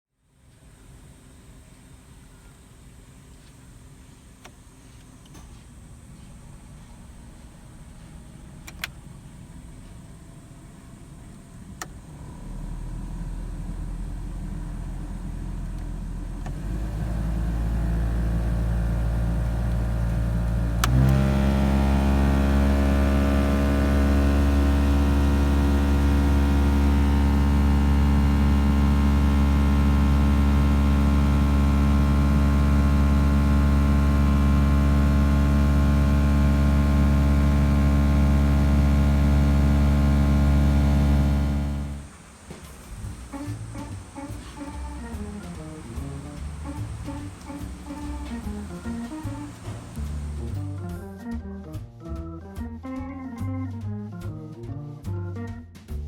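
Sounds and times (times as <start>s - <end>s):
air conditioning blower hum: 3.1s - 51.0s
click: 4.4s - 5.5s, 8.6s - 9.0s, 15.6s - 16.6s, 19.4s - 21.5s.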